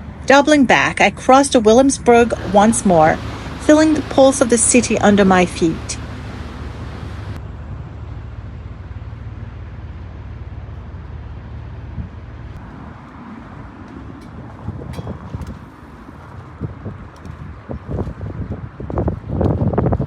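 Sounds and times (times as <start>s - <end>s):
rumble of passing vehicles: 0.0s - 20.0s.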